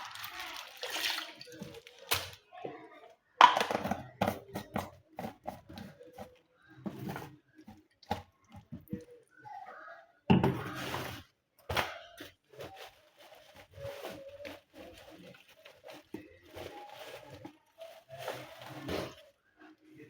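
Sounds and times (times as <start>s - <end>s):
objects knocking and clicking: 3.4s - 9.2s.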